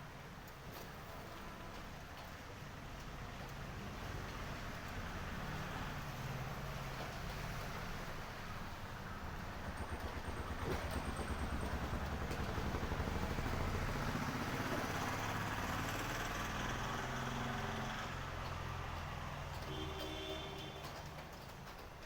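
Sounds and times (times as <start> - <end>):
steady rain: 0.0 - 9.7, 12.0 - 22.0
vehicle engine passing by: 5.2 - 19.7.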